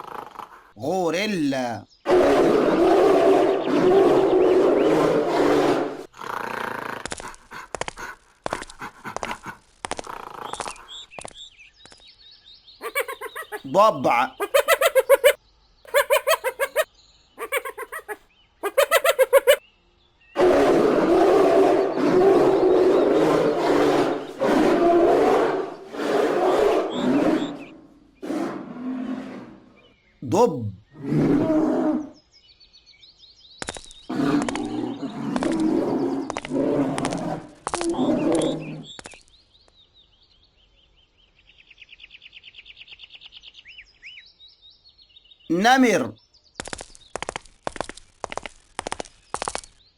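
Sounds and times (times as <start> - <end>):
hyenas growling and roaring: 2.1 - 7.2, 20.4 - 27.6, 31.0 - 32.2, 34.1 - 38.9
bear growling: 12.8 - 19.6
birds chirping: 12.8 - 19.6.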